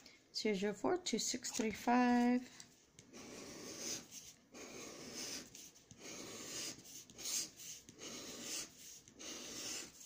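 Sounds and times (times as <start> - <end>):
scratching lottery ticket: 3.0 - 10.0.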